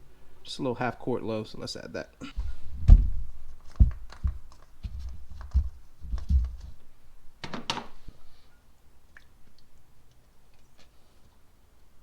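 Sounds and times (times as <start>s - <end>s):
plastic jug handling clicks and thumps: 2.2s - 8.0s
crackling plastic clatter: 2.9s - 8.0s.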